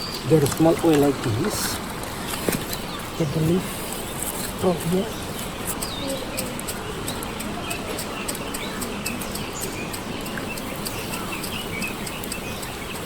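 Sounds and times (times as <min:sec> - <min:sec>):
small birds chirping: 0:00.0 - 0:13.0
steady outdoor hiss: 0:00.0 - 0:13.0
sharp little clicks: 0:03.9 - 0:13.0.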